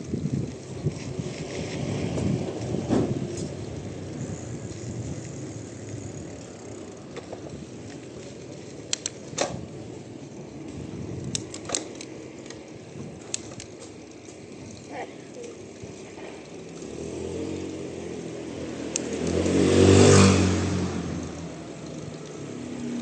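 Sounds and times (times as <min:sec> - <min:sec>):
bicycle tyre and wind noise: 0:00.0 - 0:23.0
sharp rattling clicks: 0:08.8 - 0:09.6, 0:11.2 - 0:12.6.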